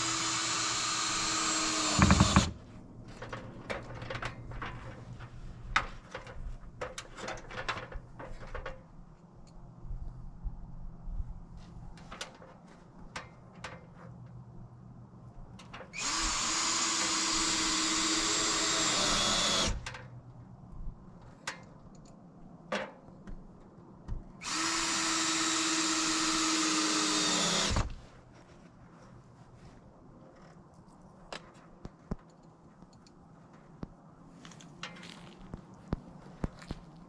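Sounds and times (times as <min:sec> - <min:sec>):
power drill whining: 0:00.0 - 0:02.6, 0:16.0 - 0:19.8, 0:24.4 - 0:28.0.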